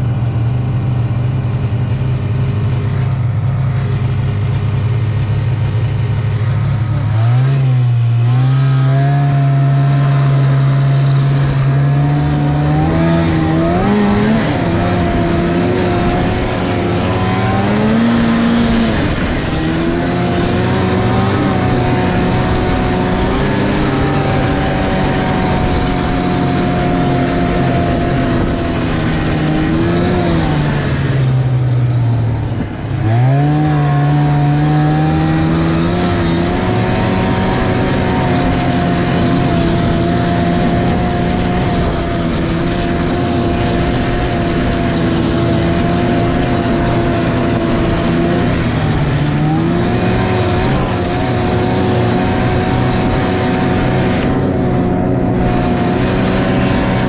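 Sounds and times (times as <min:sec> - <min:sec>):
snowmobile engine running: 0:00.0 - 0:57.0.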